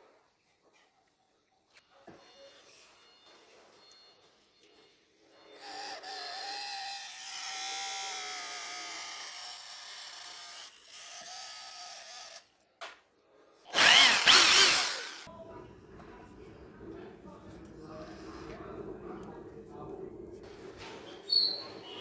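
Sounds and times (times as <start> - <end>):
small electric motor whining: 5.4 - 12.4, 13.7 - 15.3
harsh motor burst: 13.7 - 15.3.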